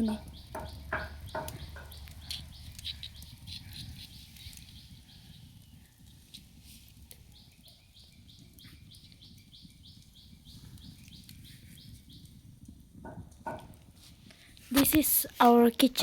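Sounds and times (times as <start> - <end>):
bird chirping faintly: 0.0 - 6.1.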